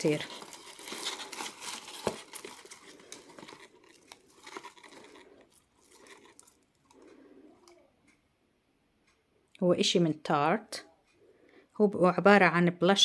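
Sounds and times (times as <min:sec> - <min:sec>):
paper packaging crinkling: 0:00.0 - 0:07.1.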